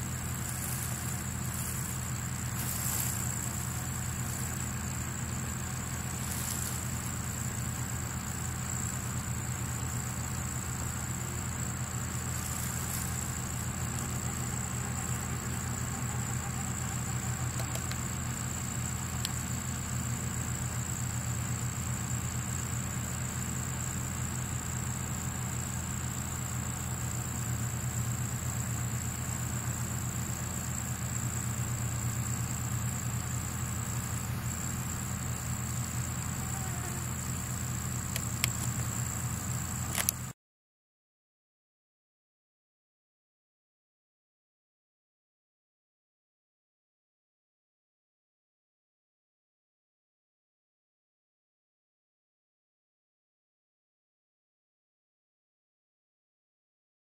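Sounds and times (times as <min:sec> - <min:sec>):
steady low rumble: 0:00.0 - 0:10.2
thin high-pitched whine: 0:00.0 - 0:19.5.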